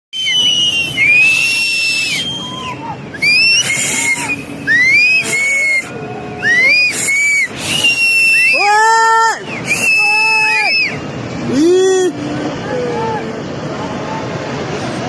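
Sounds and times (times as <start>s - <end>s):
people whistling shrilly: 0.2s - 11.0s.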